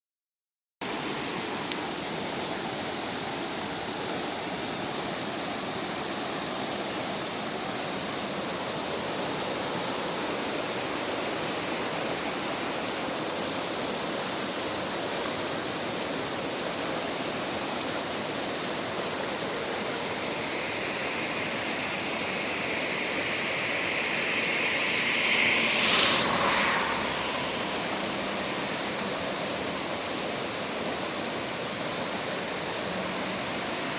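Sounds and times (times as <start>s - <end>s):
stream water rushing: 0.8s - 33.9s
higher rushing sound: 19.1s - 31.0s.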